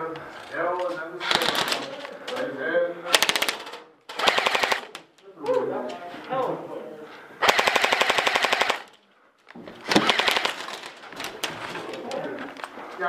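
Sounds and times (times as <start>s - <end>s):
airsoft rifle full-auto bursts: 1.2s - 1.9s, 3.1s - 5.1s, 7.4s - 9.0s, 9.8s - 10.9s.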